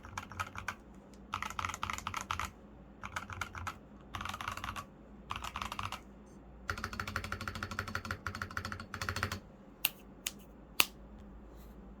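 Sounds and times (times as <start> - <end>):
mechanical keyboard typing: 0.0 - 6.0, 6.7 - 9.4.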